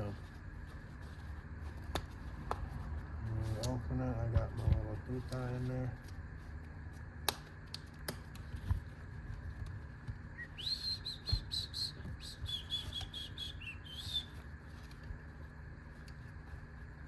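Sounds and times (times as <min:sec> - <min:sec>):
bird chirping whistled notes: 0:10.4 - 0:14.4.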